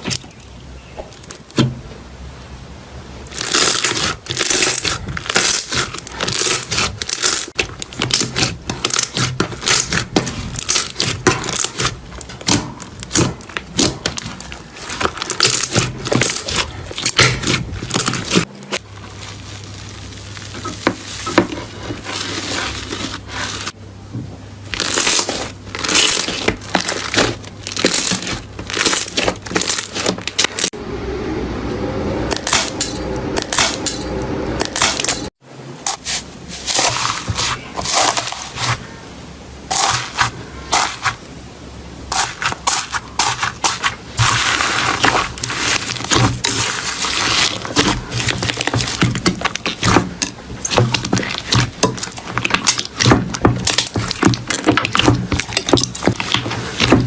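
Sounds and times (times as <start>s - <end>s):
slime crackling and popping: 3.3s - 21.4s, 24.7s - 30.8s, 42.1s - 57.0s.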